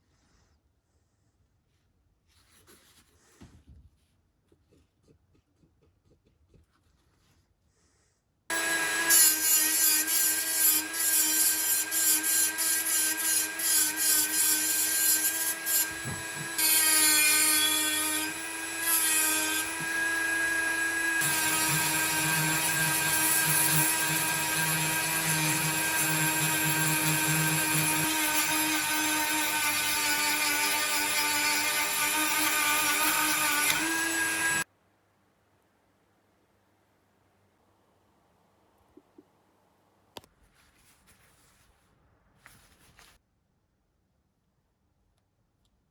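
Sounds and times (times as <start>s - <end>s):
power tool whining and grinding: 8.5s - 34.7s.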